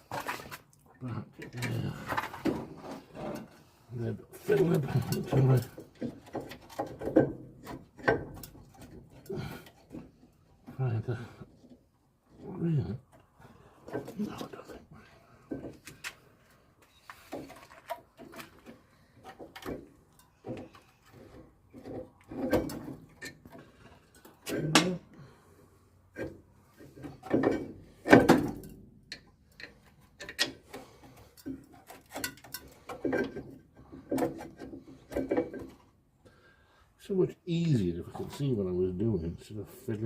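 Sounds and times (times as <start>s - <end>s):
metal brake parts clicking and scraping: 26.9s - 33.4s.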